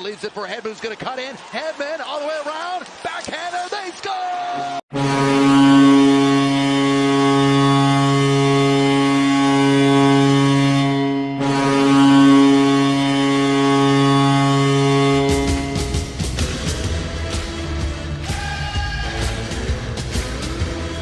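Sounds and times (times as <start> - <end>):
low goal horn blasts: 4.9 - 17.4.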